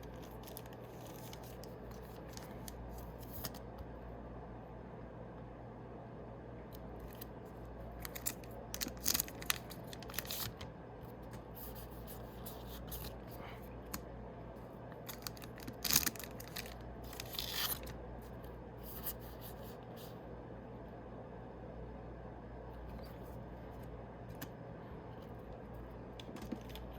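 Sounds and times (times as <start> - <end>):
foil wrapper crackling and rustling: 0.0 - 3.6, 8.0 - 10.6, 15.0 - 18.0
foil pack tearing: 8.0 - 10.6, 15.1 - 17.9.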